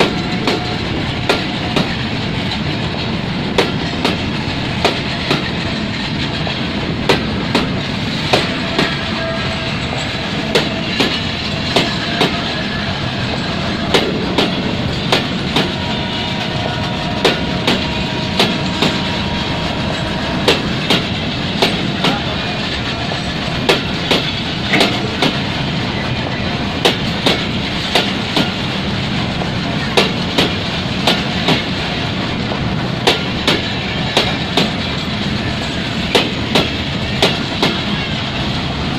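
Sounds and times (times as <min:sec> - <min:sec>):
train wagons rumbling: 0:00.0 - 0:38.9
wheels clicking over rail joints: 0:20.4 - 0:38.1.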